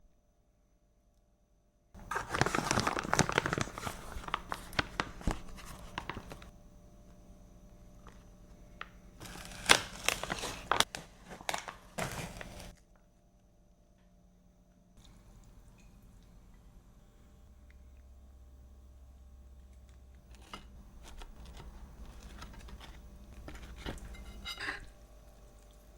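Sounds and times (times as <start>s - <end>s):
packaging crinkling: 2.0s - 6.5s, 9.2s - 12.7s, 20.4s - 24.4s.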